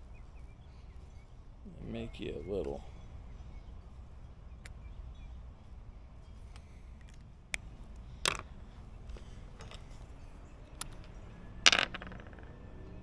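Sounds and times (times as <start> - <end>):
clicks of small hard objects: 6.5 - 12.5.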